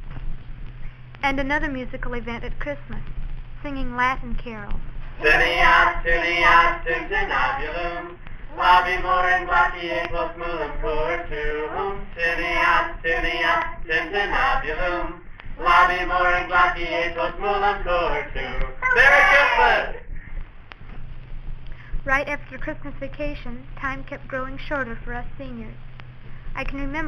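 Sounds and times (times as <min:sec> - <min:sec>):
class singing a carol: 0:05.2 - 0:20.0.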